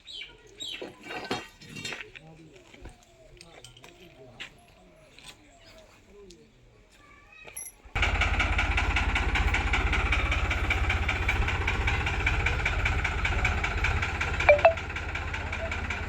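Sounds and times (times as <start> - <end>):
tractor diesel engine running: 8.0 - 16.0.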